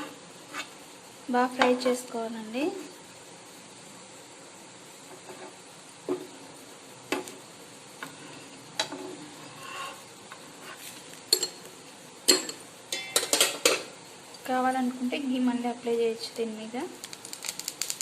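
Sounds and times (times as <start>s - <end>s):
omelette sizzling in a pan: 2.4s - 12.7s, 16.9s - 18.0s.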